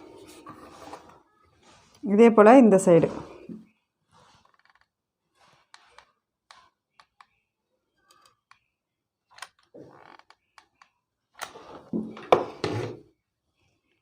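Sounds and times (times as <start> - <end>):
thread and canvas rustling: 0.2 - 6.7.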